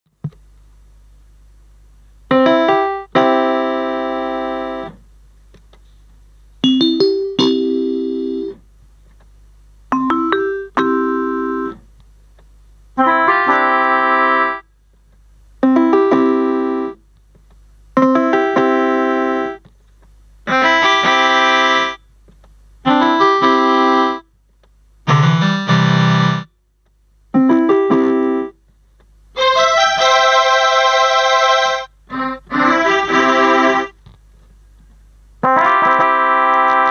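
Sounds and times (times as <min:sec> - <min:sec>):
electronic keyboard notes and chords: 0:02.3 - 0:05.0, 0:06.6 - 0:08.6, 0:10.0 - 0:11.8, 0:13.0 - 0:14.6, 0:15.6 - 0:17.0, 0:18.0 - 0:19.6, 0:20.5 - 0:22.0, 0:22.9 - 0:24.2, 0:25.1 - 0:26.5, 0:27.4 - 0:28.6, 0:29.4 - 0:34.0, 0:35.4 - 0:36.9.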